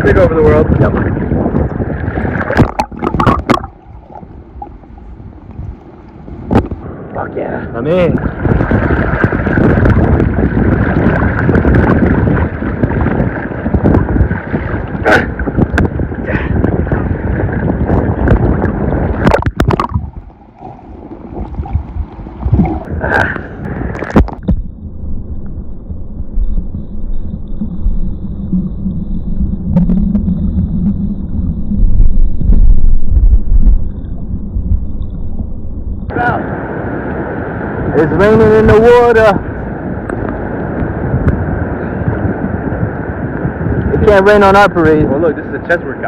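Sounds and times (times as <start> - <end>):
dull rumble: 0.0 - 46.0
wind buffeting microphone: 0.0 - 46.0
water sloshing and splashing: 0.5 - 6.8, 8.2 - 24.8.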